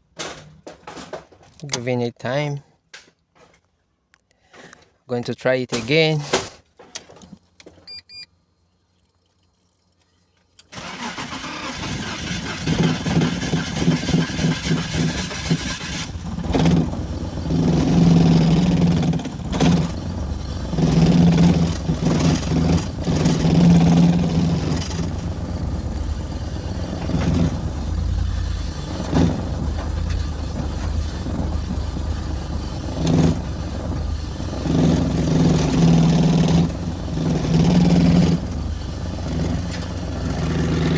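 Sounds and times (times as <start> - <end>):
car engine cranking: 10.6 - 40.9
engine running roughly: 10.8 - 40.9.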